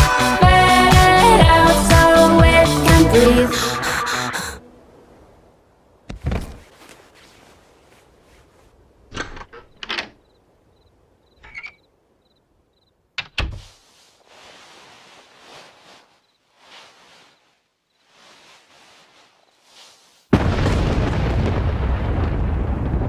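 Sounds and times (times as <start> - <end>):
thuds and knocks: 6.1 - 6.7.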